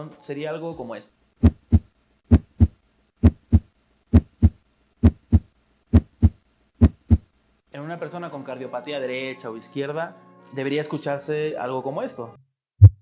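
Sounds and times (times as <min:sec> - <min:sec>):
heartbeat lub-dub: 0:01.4 - 0:07.3, 0:12.8 - 0:13.0.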